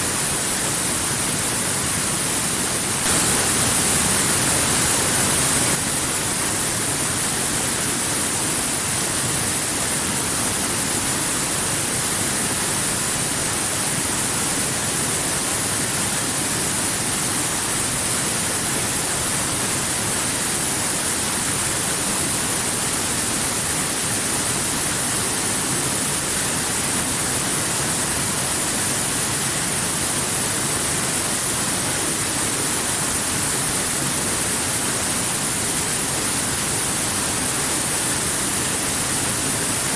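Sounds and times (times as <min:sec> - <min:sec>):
waterfall rushing: 0:02.1 - 0:12.6.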